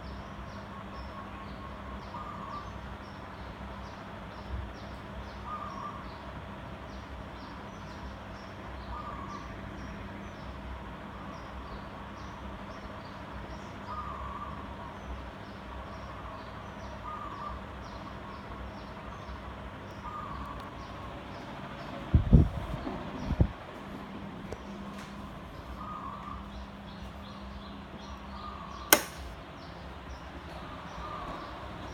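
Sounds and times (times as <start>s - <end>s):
ceiling fan motor hum: 0.0s - 31.9s
birds chirping: 11.2s - 31.9s.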